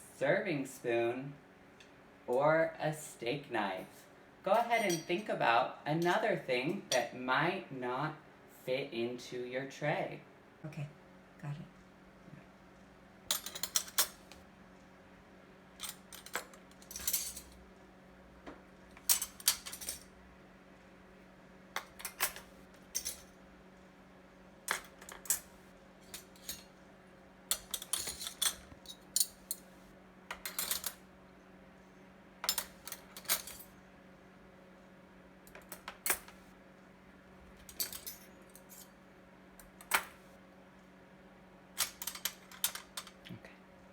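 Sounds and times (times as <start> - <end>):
silverware clinking: 4.6 - 5.2, 26.1 - 26.7, 27.5 - 29.6.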